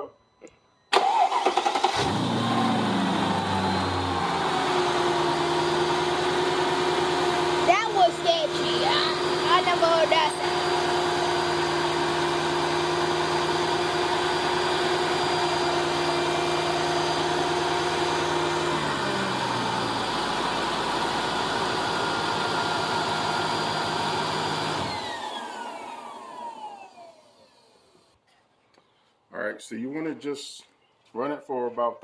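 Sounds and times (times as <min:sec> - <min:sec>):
car engine idling: 0:01.0 - 0:24.4
high whine spinning down: 0:02.1 - 0:28.0.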